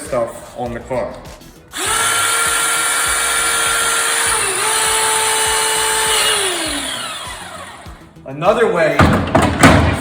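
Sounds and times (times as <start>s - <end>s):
hydraulic spreader motor whine: 1.7s - 8.1s.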